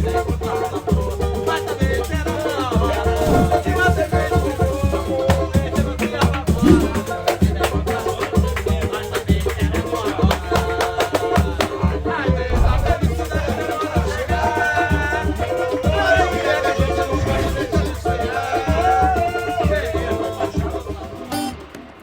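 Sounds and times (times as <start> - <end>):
person singing: 6.2 - 7.3.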